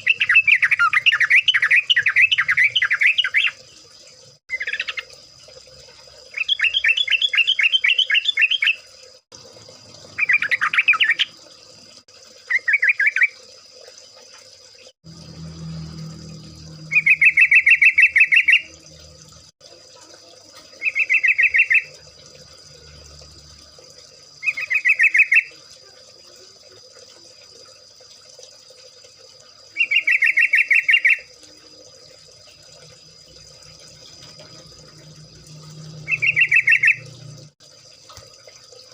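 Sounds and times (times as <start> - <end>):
bird bubbling chatter: 10.1 - 11.5, 12.4 - 13.5, 16.8 - 19.0, 20.7 - 22.2, 24.3 - 26.4, 29.7 - 31.8, 34.4 - 37.4.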